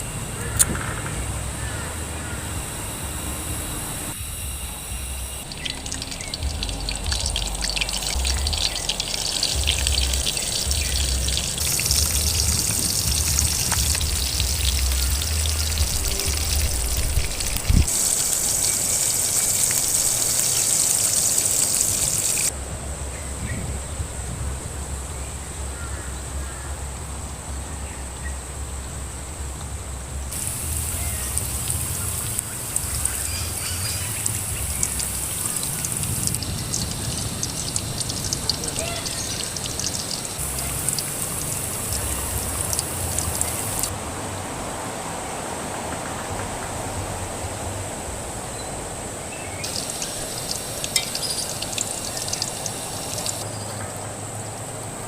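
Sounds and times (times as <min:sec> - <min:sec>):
low rumble: 0:00.0 - 0:17.9
running water: 0:04.4 - 0:22.5, 0:30.3 - 0:44.0, 0:49.6 - 0:53.6.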